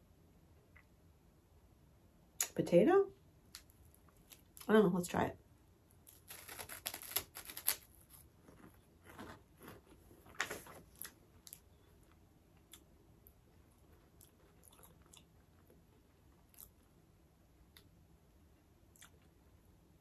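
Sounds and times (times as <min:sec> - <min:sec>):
crunching corn snack: 0:06.0 - 0:11.7, 0:13.7 - 0:16.8
quiet chewing: 0:08.1 - 0:17.0, 0:18.6 - 0:19.5.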